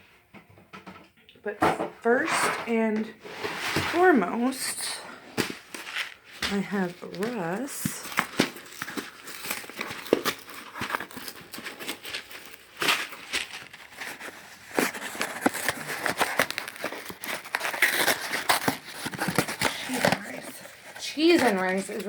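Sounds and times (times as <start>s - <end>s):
plastic bag of rice crinkling: 5.6s - 22.0s.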